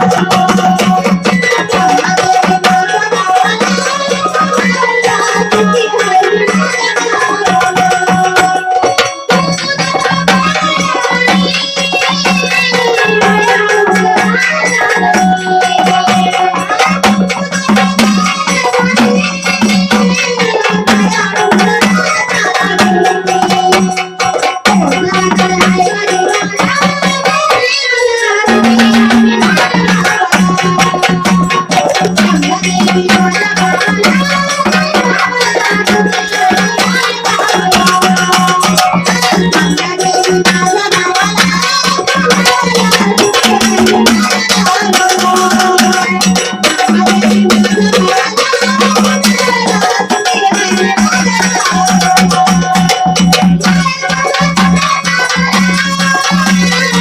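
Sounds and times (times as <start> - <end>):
hand drum and jingle percussion: 0.0 - 57.0
person singing melody: 24.9 - 45.9.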